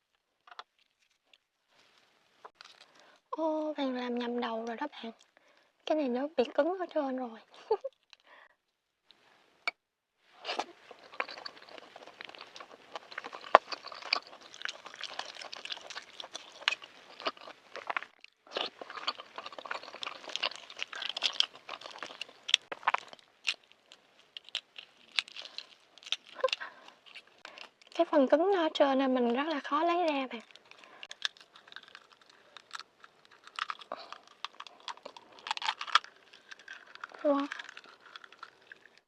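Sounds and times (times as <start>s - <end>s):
egg shell crackling: 10.6s - 28.1s, 29.5s - 39.0s.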